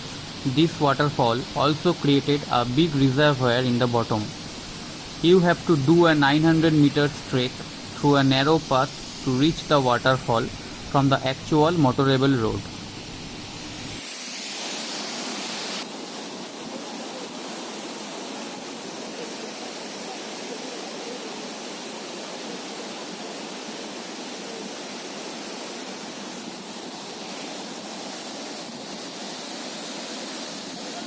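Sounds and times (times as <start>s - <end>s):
waterfall roaring: 0.0s - 14.0s.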